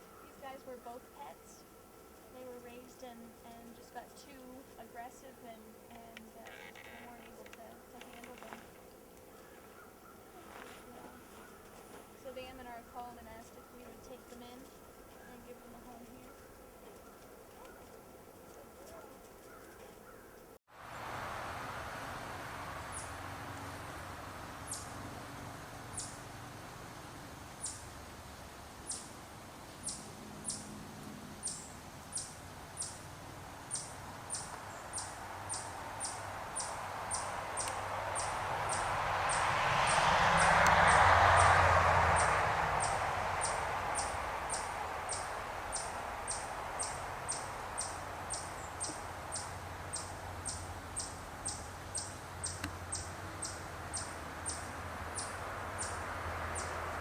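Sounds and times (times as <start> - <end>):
small bird chirping: 24.7 - 25.0, 25.9 - 26.2, 27.6 - 27.9, 28.9 - 29.2, 29.8 - 30.7, 31.4 - 33.0, 33.7 - 41.0, 42.2 - 56.0.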